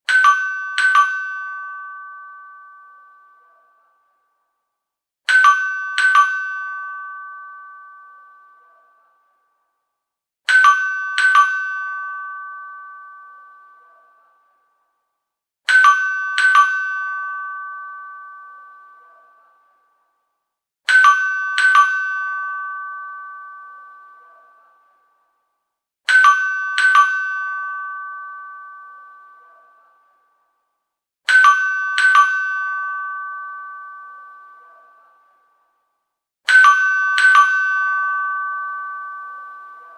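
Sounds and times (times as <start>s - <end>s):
door chime ding-dong: 0.1s - 4.0s, 36.5s - 39.9s.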